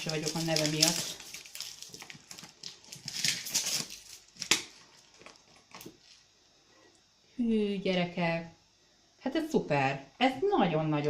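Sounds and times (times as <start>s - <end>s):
plastic bottle rustling: 0.0s - 6.2s.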